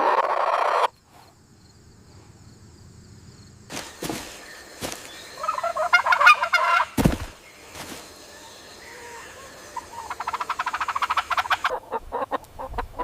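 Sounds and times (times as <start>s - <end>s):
fowl rattling call: 4.9s - 7.4s, 9.0s - 13.0s
sharp thump: 7.0s - 7.4s.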